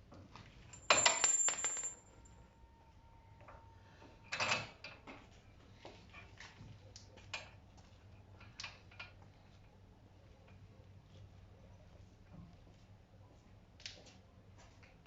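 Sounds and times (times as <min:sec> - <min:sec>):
metal tools clinking: 0:00.7 - 0:02.1.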